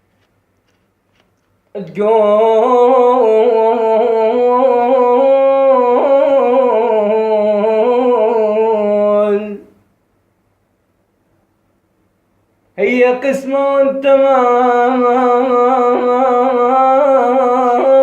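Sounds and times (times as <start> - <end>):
man singing held note: 12.8 - 18.0.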